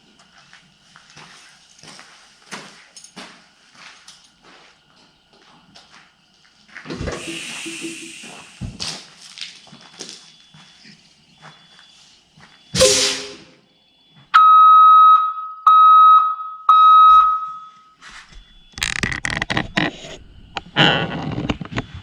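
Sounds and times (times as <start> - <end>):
short burst of noise: 6.9 - 8.7, 12.8 - 13.6
high-pitched electronic alarm beeps: 7.0 - 8.8, 12.4 - 13.8, 14.4 - 19.2.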